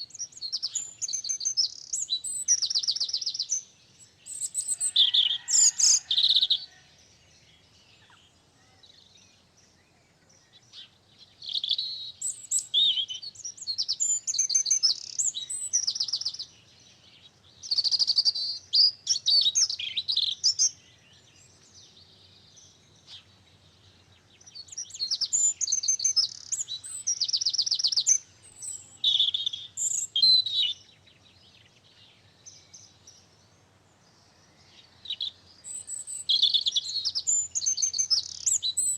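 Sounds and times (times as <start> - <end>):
songbird trills and chirps: 0.0 - 38.9.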